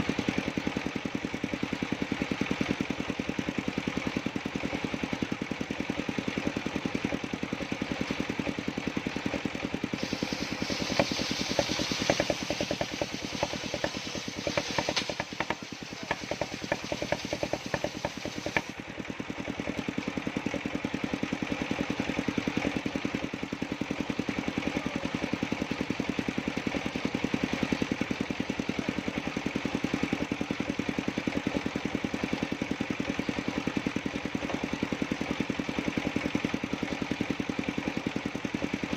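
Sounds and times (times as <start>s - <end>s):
sawmill engine thudding: 9.2s - 18.8s
circular saw blade cutting wood: 10.0s - 18.8s.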